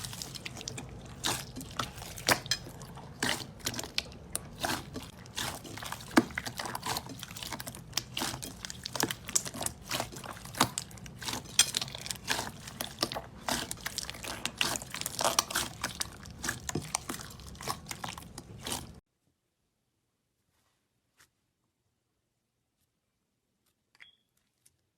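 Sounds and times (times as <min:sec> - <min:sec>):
slime being squished: 0:00.0 - 0:19.0.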